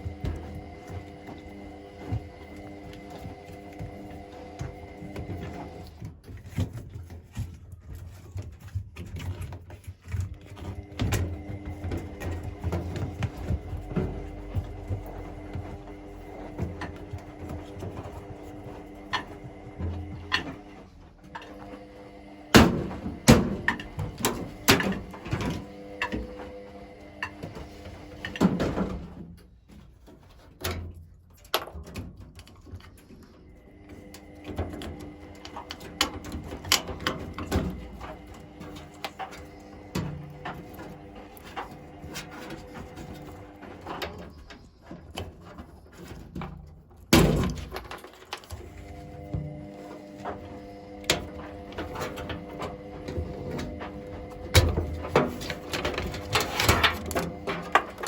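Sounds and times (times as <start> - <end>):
washing machine parts clattering: 0.0 - 58.0.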